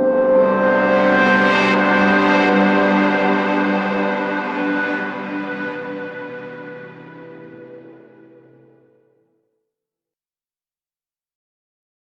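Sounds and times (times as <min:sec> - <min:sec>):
ambient background music: 0:00.0 - 0:09.1.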